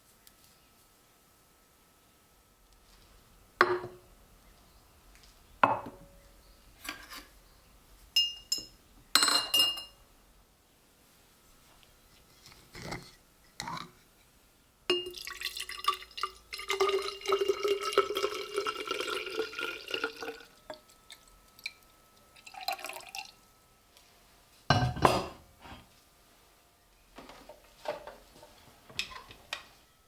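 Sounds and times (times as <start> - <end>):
glass clinking and knocking: 8.2 - 10.0, 14.9 - 15.7, 24.7 - 25.4.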